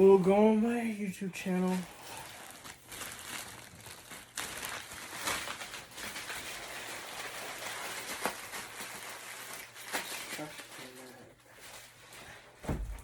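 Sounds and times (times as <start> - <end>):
rustling and crinkling handling noise: 0.1 - 13.0.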